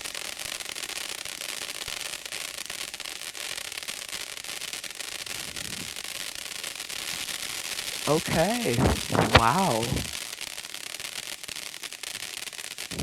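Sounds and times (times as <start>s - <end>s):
firework fountain spraying hiss: 0.1s - 13.0s
fine crackling: 8.1s - 10.2s.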